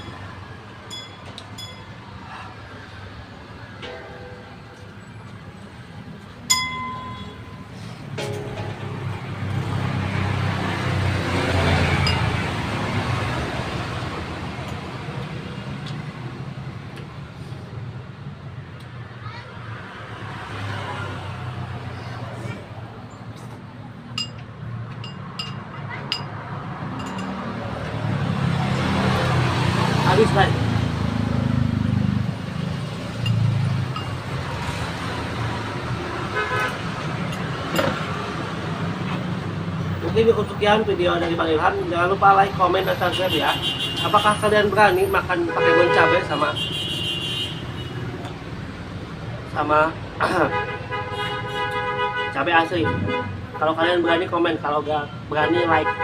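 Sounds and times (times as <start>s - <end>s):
low rumble of traffic: 0.0s - 56.0s
vehicle passing close by: 8.8s - 16.7s, 19.7s - 22.8s, 26.4s - 40.2s
vehicle horn toot: 36.4s - 36.8s, 45.5s - 48.0s, 50.4s - 53.4s.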